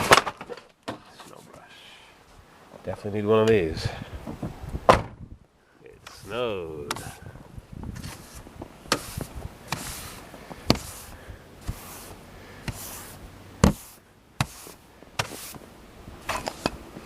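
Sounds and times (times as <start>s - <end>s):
brush sweeping snow off vehicle: 6.0s - 7.2s, 7.9s - 17.0s.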